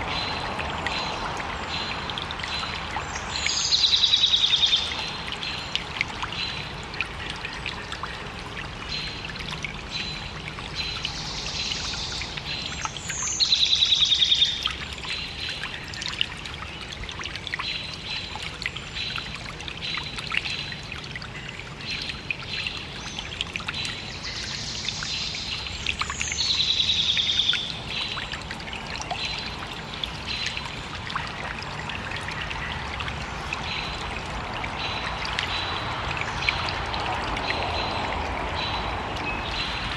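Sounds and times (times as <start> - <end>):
stream trickling over stones: 0.0 - 39.9
songbird singing with trill: 2.5 - 5.7, 21.9 - 28.3.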